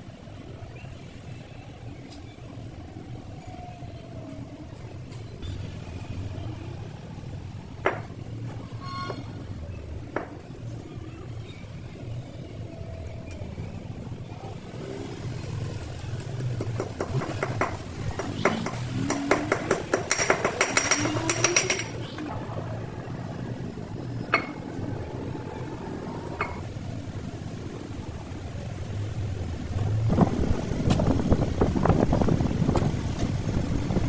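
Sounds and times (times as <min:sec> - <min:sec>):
metal knocks: 0:16.5 - 0:22.0
low hum: 0:17.4 - 0:34.0
rising whine: 0:17.8 - 0:34.0.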